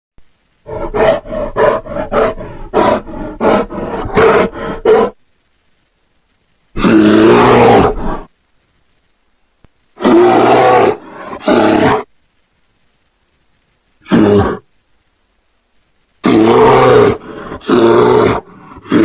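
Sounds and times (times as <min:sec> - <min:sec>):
cartoon bear roar: 0:06.8 - 0:08.3, 0:10.0 - 0:12.1, 0:16.2 - 0:19.0.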